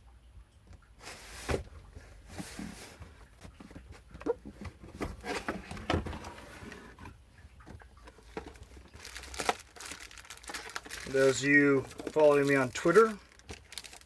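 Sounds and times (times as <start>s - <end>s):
packaging rustling and knocking: 2.3s - 7.0s, 8.1s - 14.0s.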